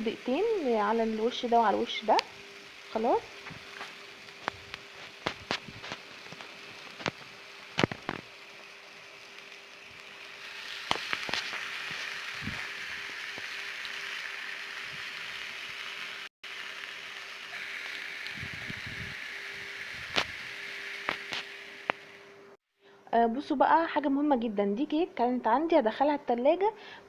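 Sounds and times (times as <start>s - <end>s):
chicken sizzling in hot oil: 0.0s - 22.2s
oil popping and crackling: 1.8s - 19.2s, 19.8s - 22.0s.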